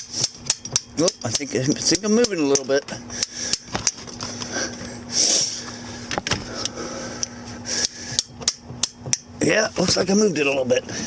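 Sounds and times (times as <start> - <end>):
wrench and hammer on metal: 0.0 - 4.0
faint steady hum: 0.0 - 11.0.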